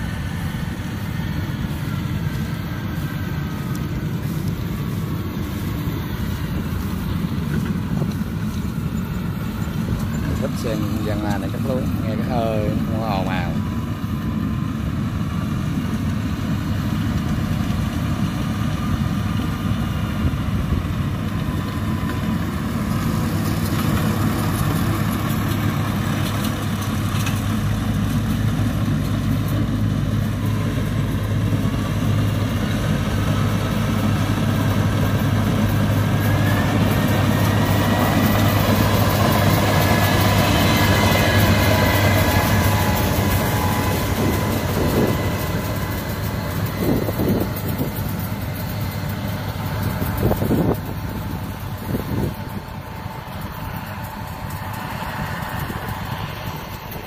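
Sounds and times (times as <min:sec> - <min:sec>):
combine harvester engine running: 0:00.0 - 0:57.0
rising whine: 0:00.0 - 0:57.0.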